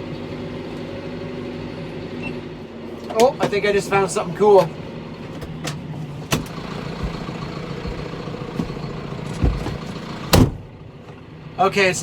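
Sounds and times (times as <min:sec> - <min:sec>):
tractor engine running: 0:00.0 - 0:12.0
clicks and low knocks: 0:06.4 - 0:08.8.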